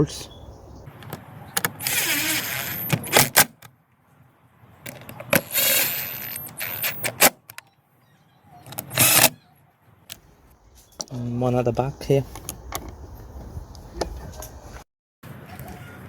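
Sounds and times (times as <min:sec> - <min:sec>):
socket tool turning bolts: 0:01.0 - 0:03.7, 0:04.9 - 0:07.6, 0:08.7 - 0:09.4.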